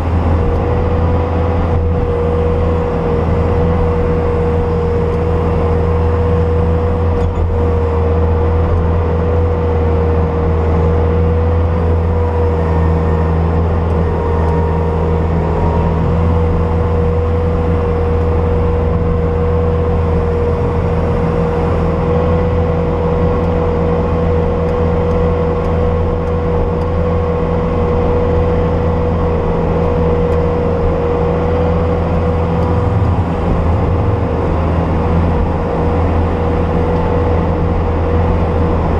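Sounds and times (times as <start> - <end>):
diesel engine under load: 0.0 - 38.9
steady whine: 0.0 - 38.9.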